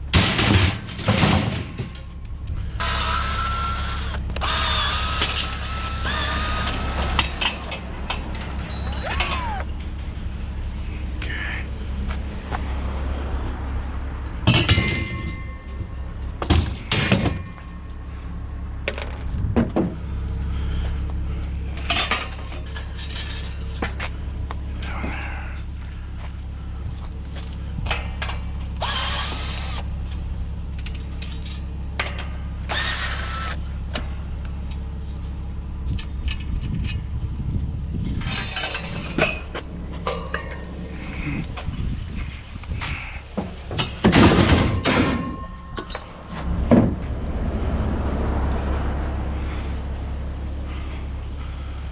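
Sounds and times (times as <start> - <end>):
scrap metal clanking and scraping: 0.0 - 2.2, 21.8 - 24.2, 30.0 - 32.5, 38.0 - 47.2
steady low hum: 15.1 - 51.9.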